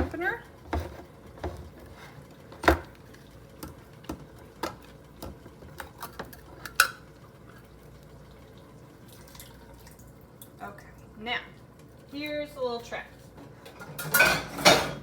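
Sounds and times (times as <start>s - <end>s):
can opener cranking and clicking: 0.7s - 7.0s.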